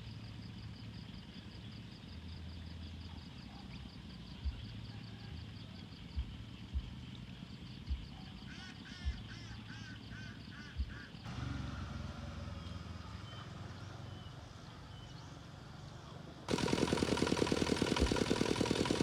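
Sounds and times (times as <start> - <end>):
low engine hum: 10.8 - 19.0.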